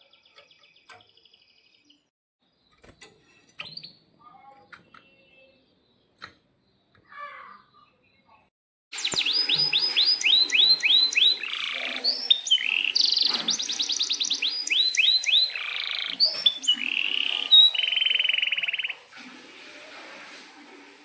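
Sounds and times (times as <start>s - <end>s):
canary singing: 9.0s - 19.0s.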